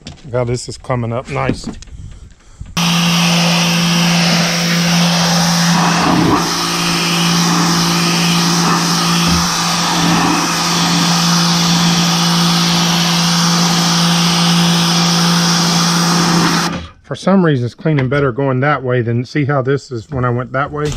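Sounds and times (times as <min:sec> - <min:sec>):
loud hiss of cleaning tool: 0:02.8 - 0:16.7
power cleaning tool motor hum: 0:02.8 - 0:16.9.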